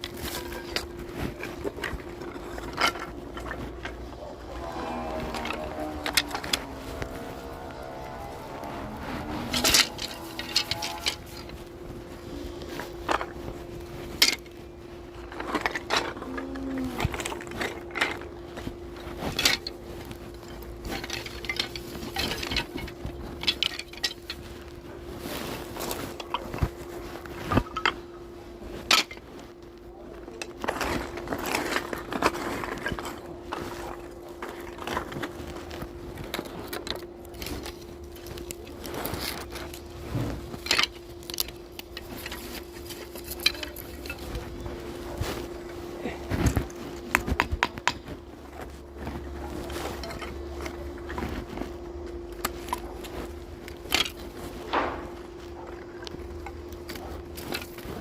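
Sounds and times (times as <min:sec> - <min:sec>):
machine humming: 0:00.0 - 0:28.7.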